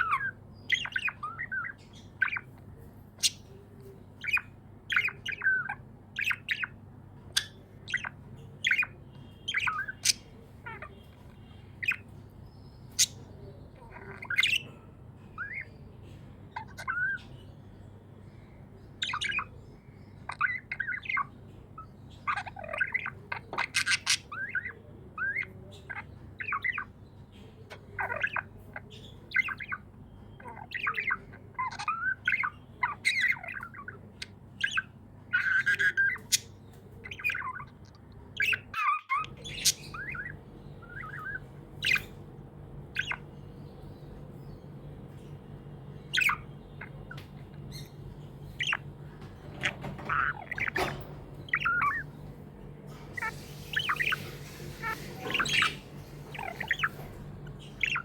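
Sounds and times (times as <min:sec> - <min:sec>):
budgerigars chirping and squawking: 0:00.0 - 0:58.0
steady low hum: 0:00.0 - 0:58.0.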